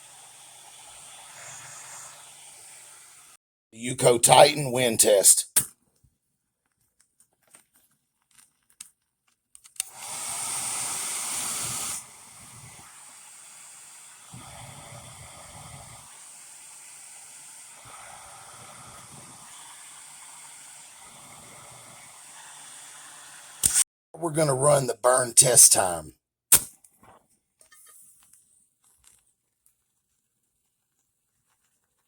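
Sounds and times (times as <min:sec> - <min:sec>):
match striking and hissing: 0:09.8 - 0:23.8, 0:26.5 - 0:26.8.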